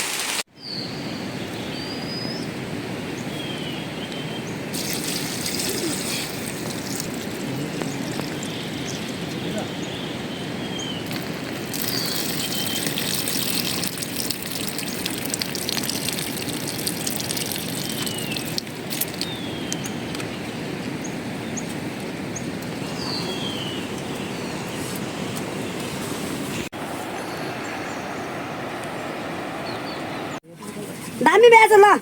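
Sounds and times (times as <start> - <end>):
high falling bird chirps: 3.2 - 13.7, 22.3 - 24.9
running water rushing: 4.6 - 20.8.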